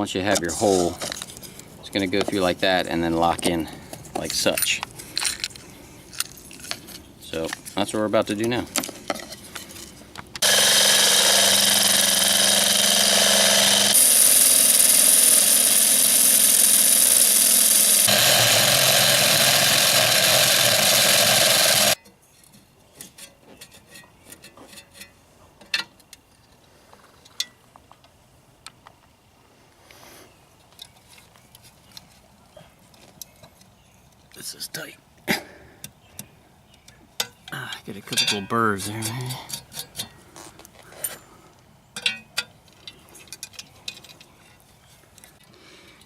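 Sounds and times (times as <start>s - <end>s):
power drill boring sheet metal: 10.4s - 22.0s.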